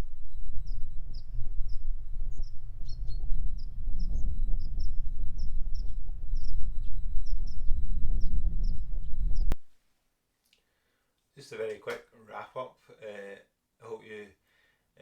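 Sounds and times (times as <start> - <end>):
small bird chirping: 0.0 - 9.6
wind rumble on microphone: 0.0 - 9.7.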